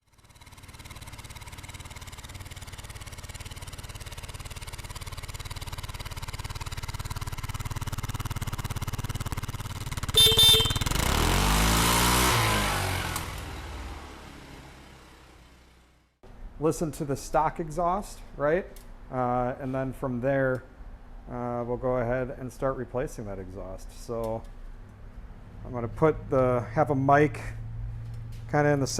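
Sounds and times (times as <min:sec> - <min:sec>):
motorbike engine passing by: 0:00.1 - 0:16.0
brief high beep: 0:10.2 - 0:10.9.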